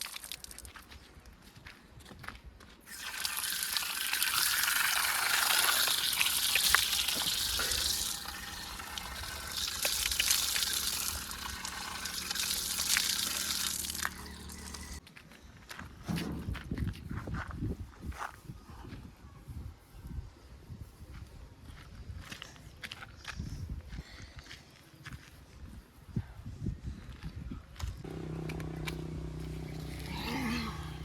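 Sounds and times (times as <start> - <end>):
wet mud pouring from bucket: 0.0 - 0.7, 2.9 - 14.8
diesel engine humming: 7.3 - 15.0, 28.0 - 31.0.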